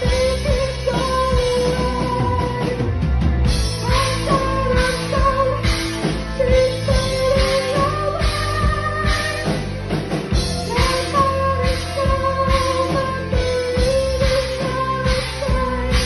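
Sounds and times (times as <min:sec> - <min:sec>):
rock band playing live: 0:00.0 - 0:16.0
steady drum beat: 0:00.0 - 0:16.0.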